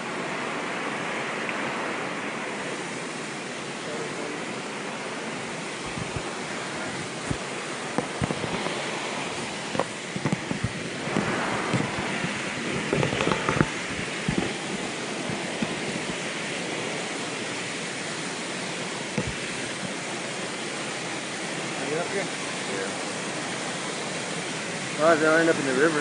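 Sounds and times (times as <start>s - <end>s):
river water rushing over rocks: 0.0s - 26.0s.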